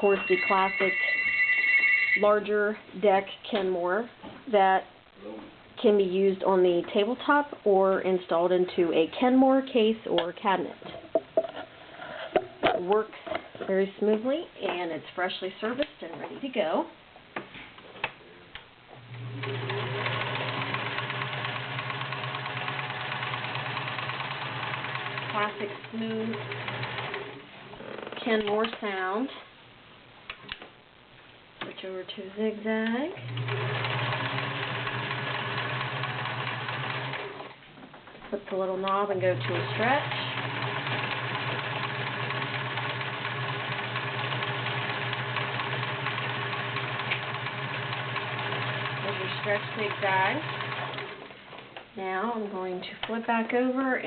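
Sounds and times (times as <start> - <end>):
sewing machine humming: 19.0 - 27.4, 33.2 - 37.6, 39.1 - 51.3.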